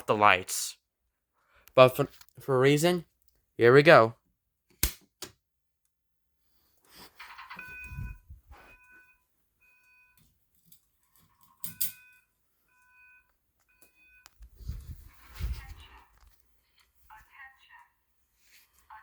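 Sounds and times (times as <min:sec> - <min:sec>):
fire alarm short beeps: 0:07.5 - 0:10.2.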